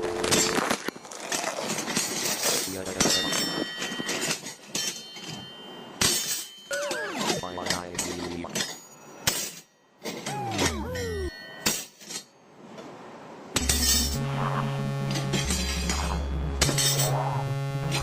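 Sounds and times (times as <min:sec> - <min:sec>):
swooping sound sliding down: 0:10.3 - 0:11.3.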